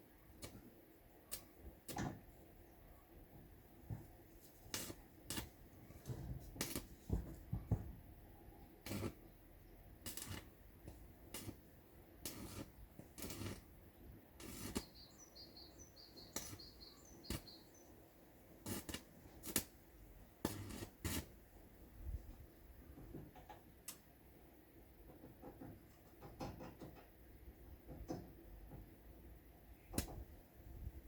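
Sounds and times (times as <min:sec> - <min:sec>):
small bird chirping: 0:14.6 - 0:18.0
sharp clicks and knocks: 0:22.9 - 0:24.0, 0:25.0 - 0:27.2.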